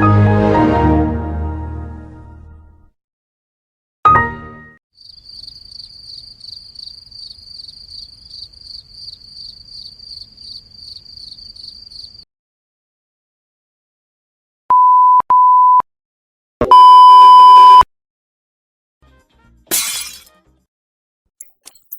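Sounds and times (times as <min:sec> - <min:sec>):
crickets chirping: 0:05.0 - 0:12.2.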